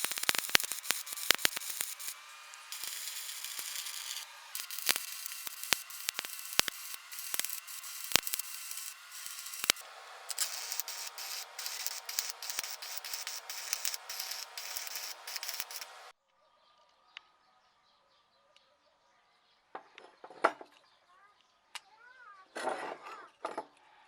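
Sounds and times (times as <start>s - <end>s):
abrasive scraping on steel: 0.0s - 16.1s.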